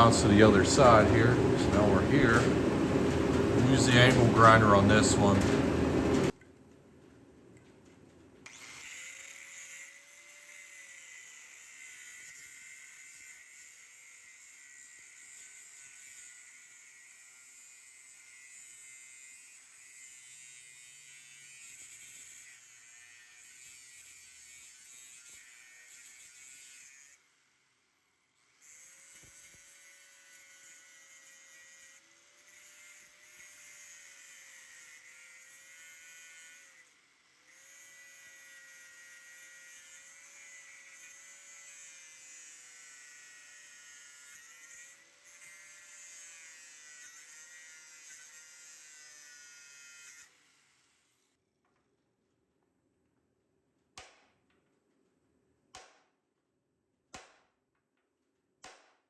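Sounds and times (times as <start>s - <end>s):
angle grinder grinding steel: 0.0s - 6.3s, 8.5s - 27.5s, 28.5s - 50.3s.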